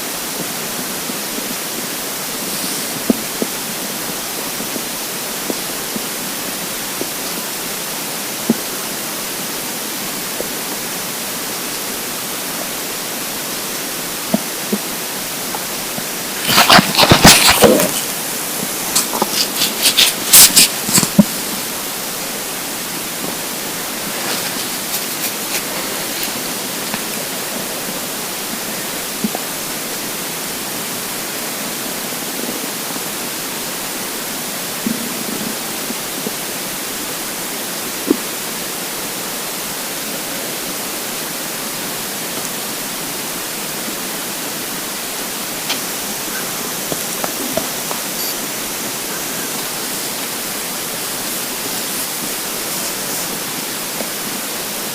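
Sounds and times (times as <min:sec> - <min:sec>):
background hiss: 0:00.0 - 0:54.9
stomach gurgling: 0:13.5 - 0:29.8, 0:44.9 - 0:54.7.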